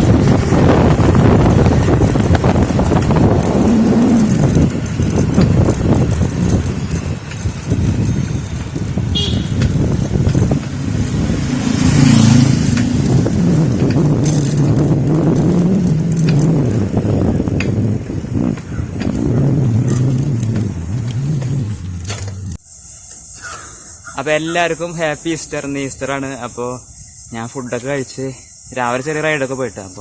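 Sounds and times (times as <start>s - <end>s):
engine tone: 0.0s - 22.6s
traffic rumble: 0.0s - 22.6s.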